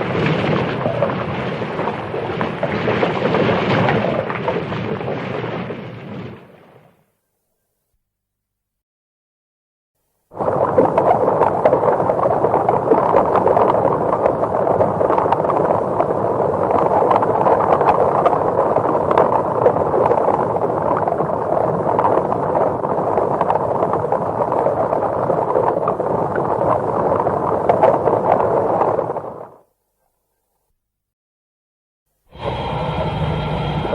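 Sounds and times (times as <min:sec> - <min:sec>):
loud rough noise with crackles: 0:00.0 - 0:06.6.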